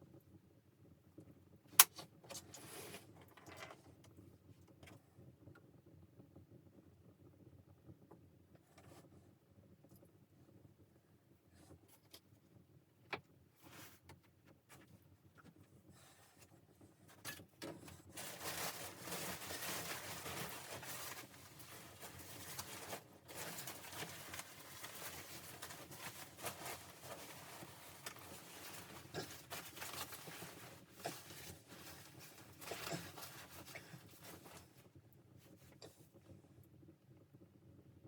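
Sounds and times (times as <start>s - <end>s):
rustling crinkling handling noise: 17.0s - 34.9s.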